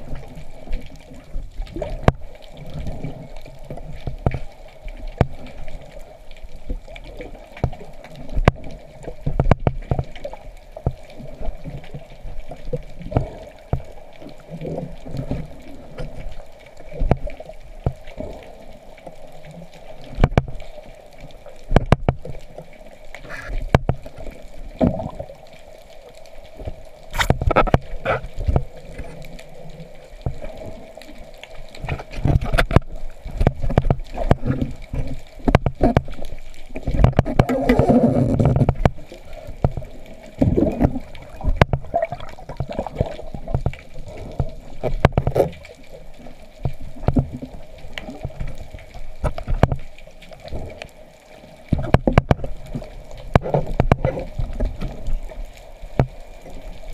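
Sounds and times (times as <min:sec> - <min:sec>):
underwater sloshing and bubbling: 0:00.0 - 0:56.9
sharp clicks and knocks: 0:27.1 - 0:29.1.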